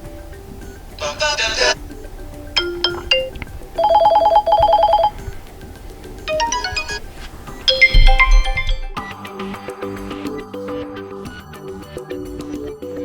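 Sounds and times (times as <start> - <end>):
fast repeated beeps: 2.6 - 5.2, 6.3 - 9.0
electronic ringtone melodies: 2.6 - 5.4, 6.2 - 9.1.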